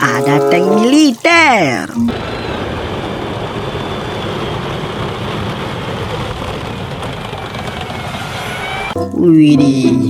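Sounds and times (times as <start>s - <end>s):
water spraying: 0.0s - 2.2s.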